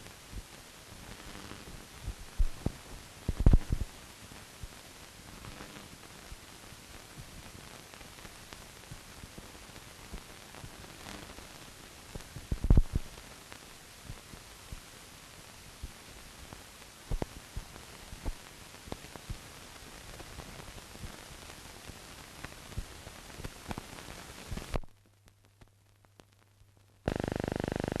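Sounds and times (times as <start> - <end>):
film surface hiss: 0.0 - 28.0
clicks and pops: 12.6 - 13.0.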